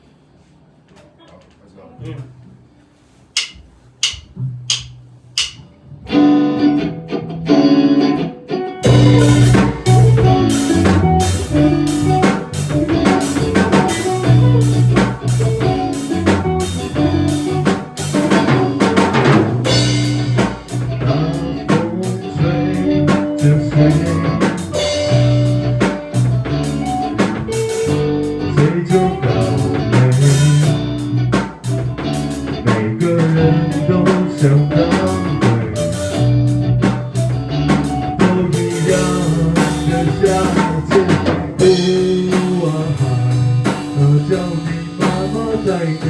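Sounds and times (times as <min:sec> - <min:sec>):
guitar chords: 0:03.4 - 0:46.0
rock band playing: 0:03.4 - 0:46.0.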